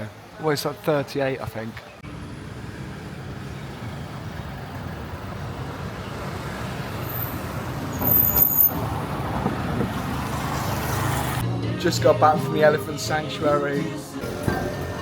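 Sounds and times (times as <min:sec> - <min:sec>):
vehicle engine rumble: 0:02.0 - 0:11.5
high squeal: 0:06.9 - 0:08.8.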